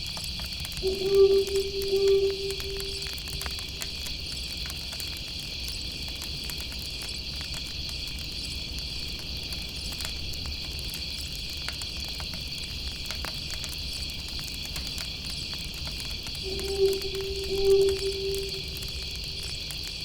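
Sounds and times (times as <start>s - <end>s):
night insects chirping: 0.8s - 4.4s, 16.4s - 20.0s.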